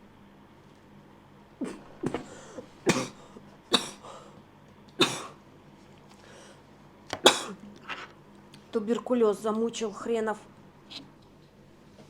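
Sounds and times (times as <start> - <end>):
woman coughing hard: 2.8 - 4.2, 5.0 - 5.4, 7.2 - 7.6.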